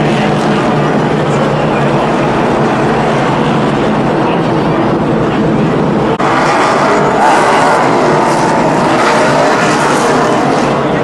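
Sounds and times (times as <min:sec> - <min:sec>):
race car engines roaring: 0:00.0 - 0:11.0.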